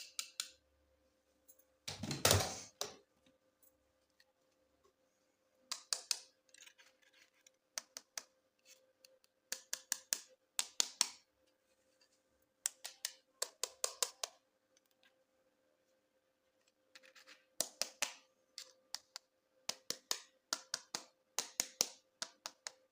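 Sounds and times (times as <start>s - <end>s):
faint steady hum: 0.0s - 22.9s.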